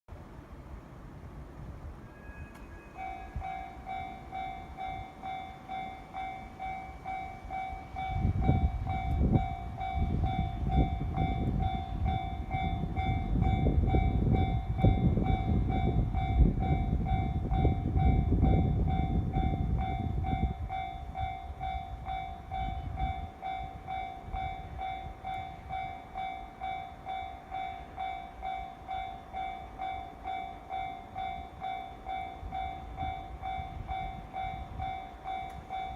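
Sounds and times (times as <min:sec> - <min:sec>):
train wheels rumbling on rails: 0:00.2 - 0:35.9
level-crossing warning bell: 0:01.9 - 0:35.9.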